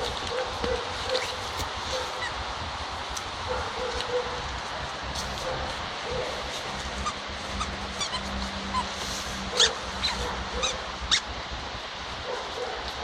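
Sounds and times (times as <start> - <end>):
dog chewing squeaky toy: 6.9 - 11.3.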